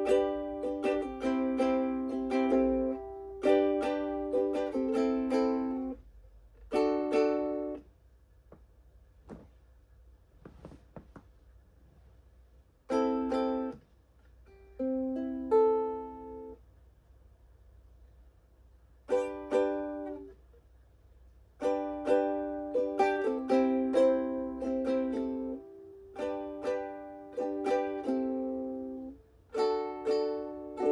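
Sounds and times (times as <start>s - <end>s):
ukulele chords strummed: 0.0s - 7.9s, 12.9s - 16.6s, 19.0s - 20.4s, 21.6s - 30.9s.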